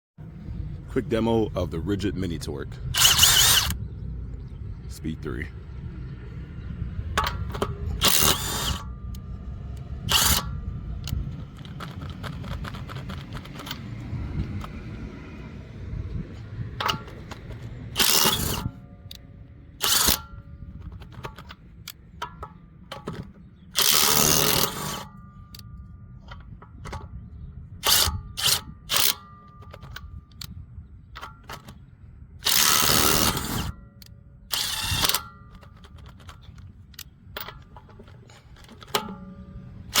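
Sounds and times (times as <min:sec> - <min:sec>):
impact wrench hammering: 0:19.8 - 0:20.3.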